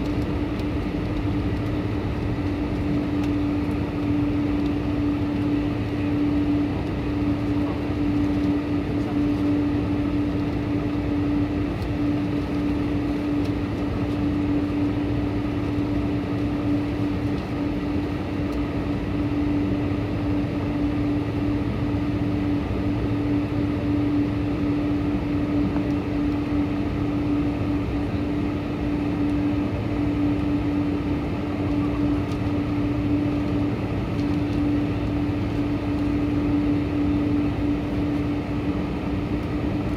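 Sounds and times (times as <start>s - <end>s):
aircraft engine drone: 0.0s - 39.9s.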